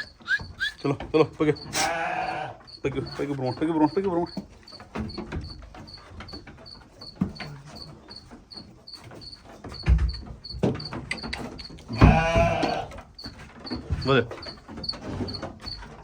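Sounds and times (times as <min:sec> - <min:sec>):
insect chirping: 0:00.0 - 0:13.8
sheep bleating: 0:01.6 - 0:02.6, 0:11.9 - 0:13.0.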